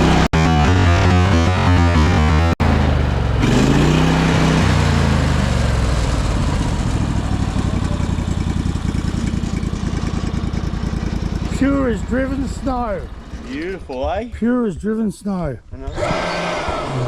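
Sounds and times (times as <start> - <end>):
engine settling to idle: 5.2 - 14.4.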